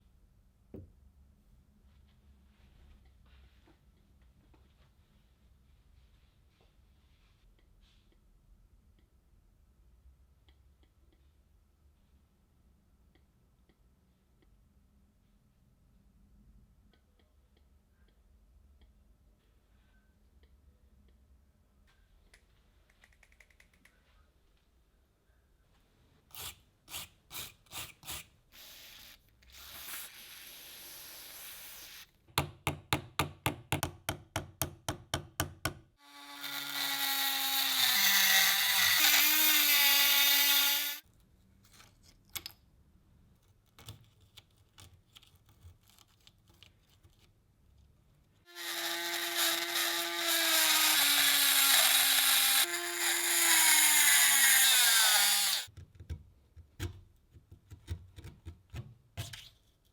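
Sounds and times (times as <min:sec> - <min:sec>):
small power tool running: 0:36.0 - 0:41.0, 0:48.5 - 0:55.7.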